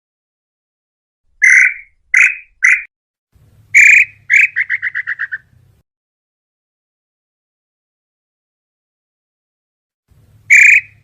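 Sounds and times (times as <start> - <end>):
bird whistled calls: 1.4 - 2.9, 3.8 - 5.5, 10.5 - 11.0.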